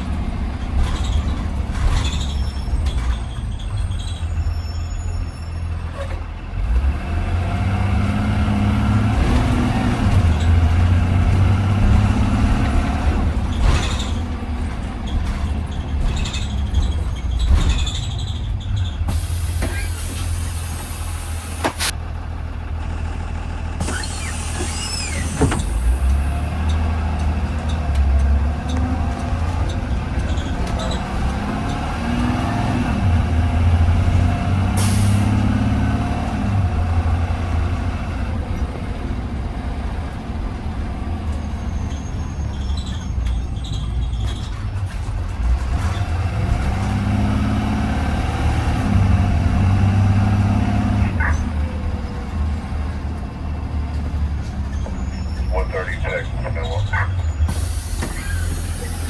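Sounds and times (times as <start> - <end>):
bus engine running: 0.0 - 59.0
air brakes hissing: 17.4 - 21.9, 23.8 - 26.2, 34.6 - 35.5, 57.1 - 59.0.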